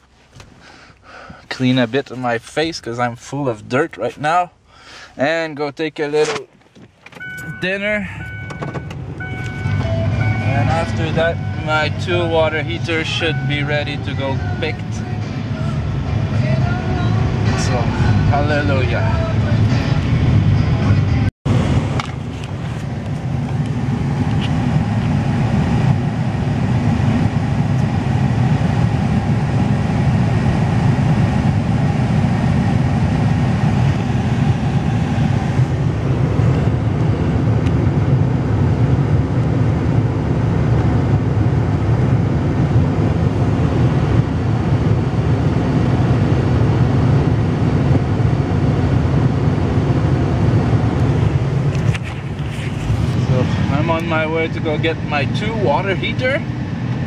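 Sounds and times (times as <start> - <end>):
truck engine and road rumble: 0.0 - 57.0
high-pitched hum: 7.2 - 37.8.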